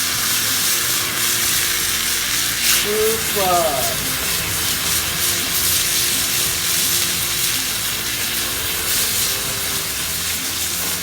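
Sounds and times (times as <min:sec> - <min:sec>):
meat sizzling in a pan: 0:00.0 - 0:11.0.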